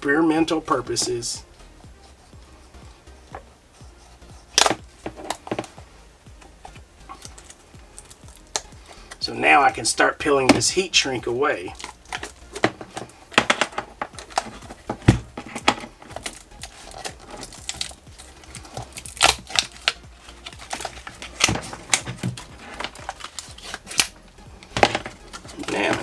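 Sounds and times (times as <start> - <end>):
plastic wrap crinkling: 0.0 - 26.0.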